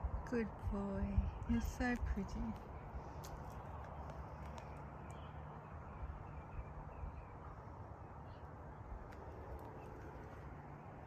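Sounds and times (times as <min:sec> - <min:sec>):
faint low outdoor rumble: 0:00.0 - 0:11.0.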